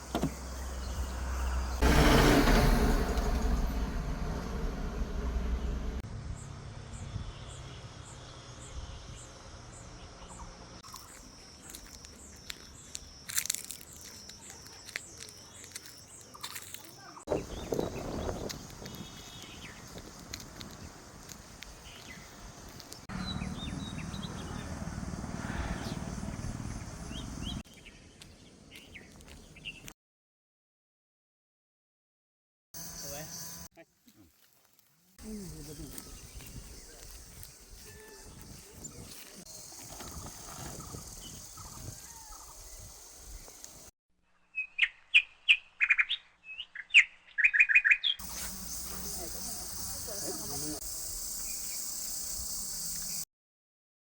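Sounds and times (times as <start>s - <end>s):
faint outdoor ambience: 0.0s - 29.9s, 32.8s - 43.9s, 48.2s - 53.3s
low rumble: 1.0s - 7.8s
small birds chirping: 7.3s - 25.0s, 25.6s - 29.9s, 34.1s - 53.2s.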